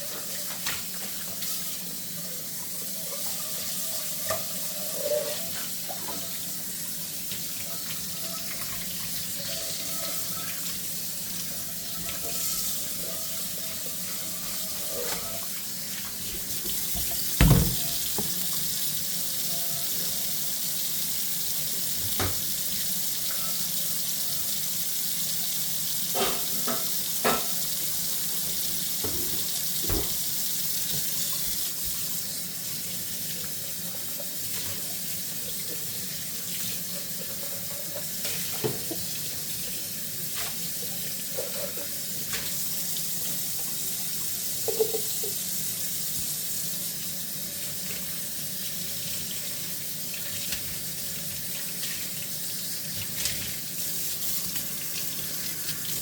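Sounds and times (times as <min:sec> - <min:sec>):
tap running into sink: 0:16.1 - 0:18.4, 0:22.0 - 0:22.6, 0:28.4 - 0:32.0, 0:38.0 - 0:39.1
dishes knocking: 0:16.9 - 0:18.4.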